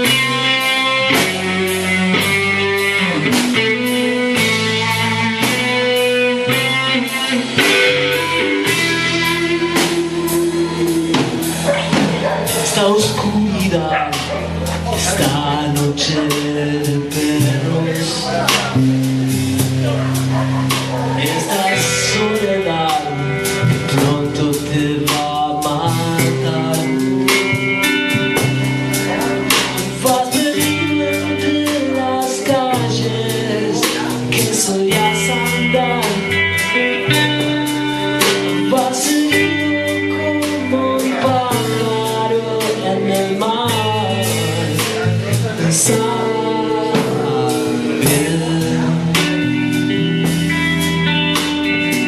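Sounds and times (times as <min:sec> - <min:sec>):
live blues-rock band: 0:00.0 - 0:52.0.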